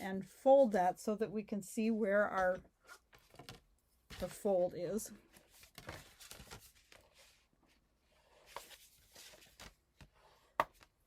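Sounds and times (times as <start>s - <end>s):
paper rustling and rubbing: 5.3s - 7.5s, 8.2s - 10.2s.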